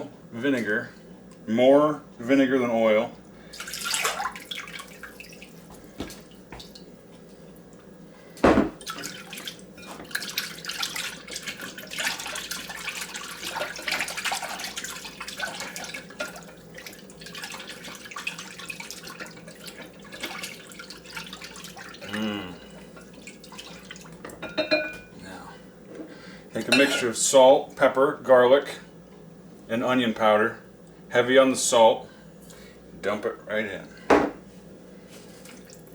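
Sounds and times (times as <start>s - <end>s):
liquid pouring into a bowl: 3.5s - 7.8s, 8.7s - 22.0s, 22.7s - 24.3s
liquid glugging: 8.7s - 25.0s.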